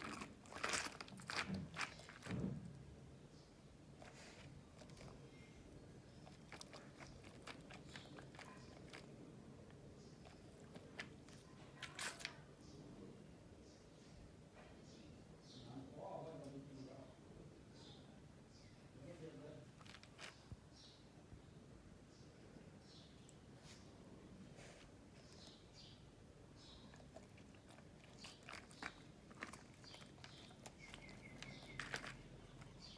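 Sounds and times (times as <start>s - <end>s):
dog crunching ice: 0.0s - 2.5s, 4.0s - 5.2s, 6.1s - 9.2s, 10.2s - 12.3s, 19.7s - 20.5s, 26.8s - 32.9s.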